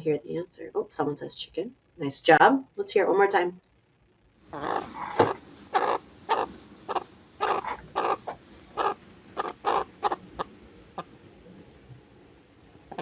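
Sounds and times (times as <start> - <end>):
chickens clucking: 4.5 - 11.2.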